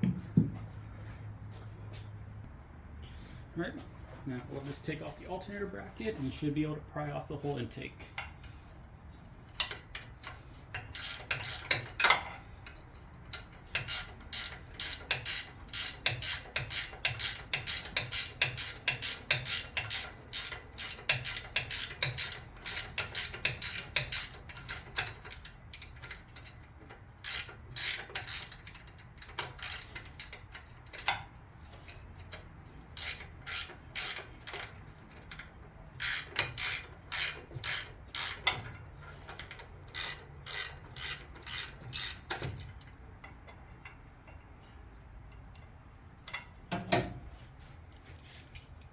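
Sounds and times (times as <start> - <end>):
socket ratchet clicking: 9.6 - 12.2, 13.4 - 26.6, 27.2 - 31.3, 32.9 - 42.6.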